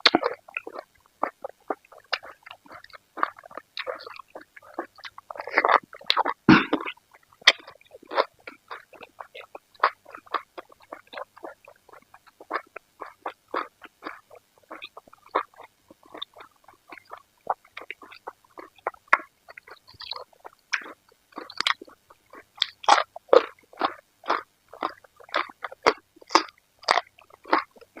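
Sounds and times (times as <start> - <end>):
chewing and biting food: 0.0 - 28.0.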